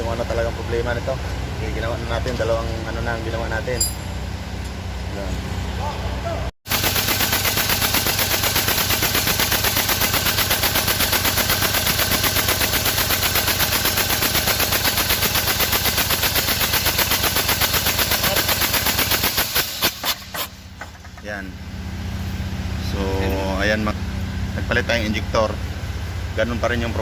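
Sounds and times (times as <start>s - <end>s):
diesel engine misfiring: 6.7s - 27.0s.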